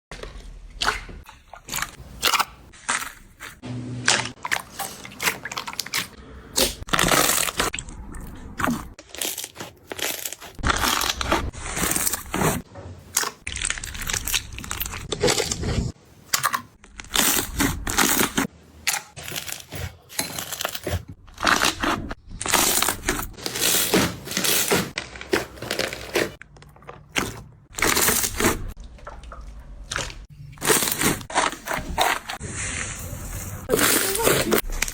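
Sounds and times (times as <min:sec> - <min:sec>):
slime squishing and crackling: 0:04.6 - 0:34.9.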